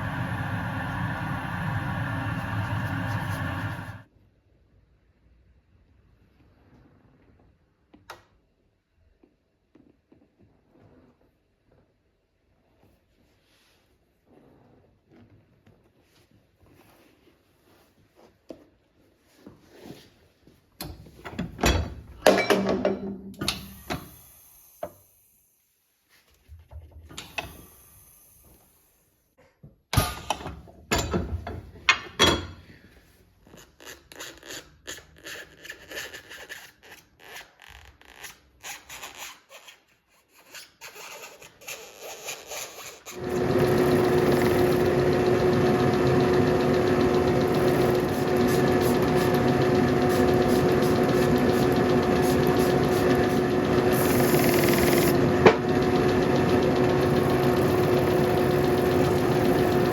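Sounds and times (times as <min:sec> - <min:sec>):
workshop machine humming: 0:00.0 - 0:04.1, 0:43.2 - 0:59.9.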